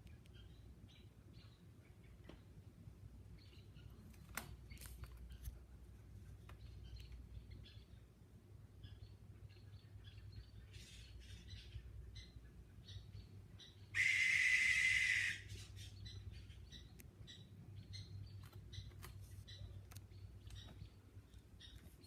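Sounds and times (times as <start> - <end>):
owl screeching: 14.0 - 15.6.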